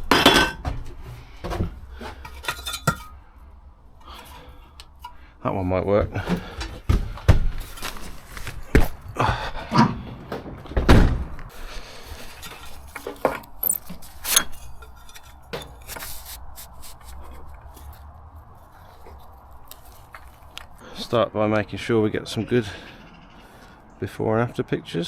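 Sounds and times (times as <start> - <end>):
equipment knocking and clattering: 0.0 - 3.1, 6.0 - 11.5.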